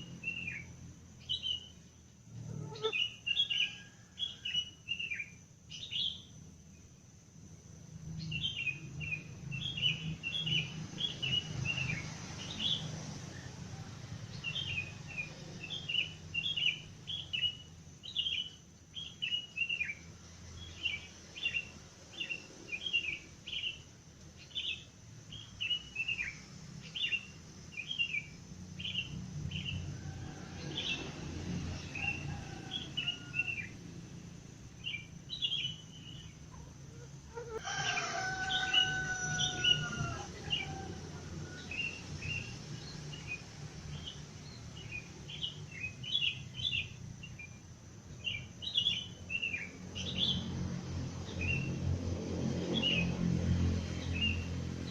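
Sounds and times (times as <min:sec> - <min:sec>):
small birds chirping: 0:00.0 - 0:07.0, 0:14.2 - 0:30.1, 0:34.7 - 0:50.5
rooster crowing: 0:29.8 - 0:33.9, 0:37.0 - 0:42.5.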